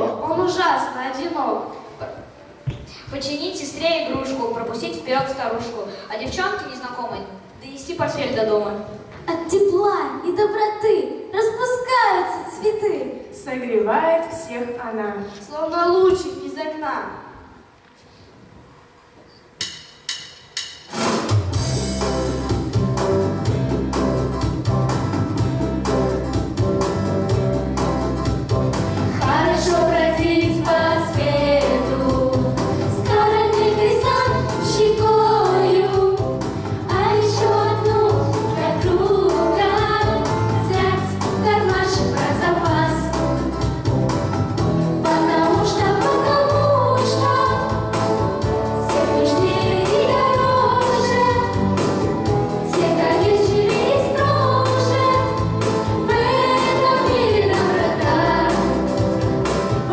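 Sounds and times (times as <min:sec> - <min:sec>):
instrumental backing with bass: 0:20.9 - 0:59.9
group of voices singing: 0:29.1 - 0:42.9, 0:45.0 - 0:59.0.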